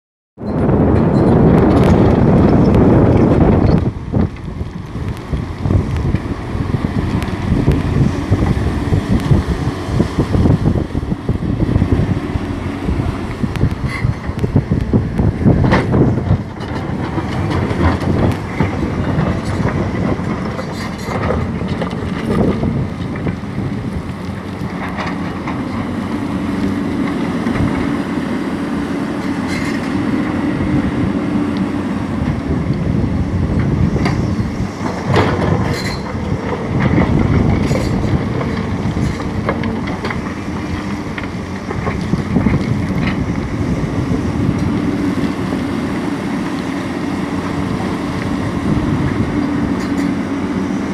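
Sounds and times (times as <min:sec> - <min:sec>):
diesel engines under load: 0:00.4 - 0:50.9.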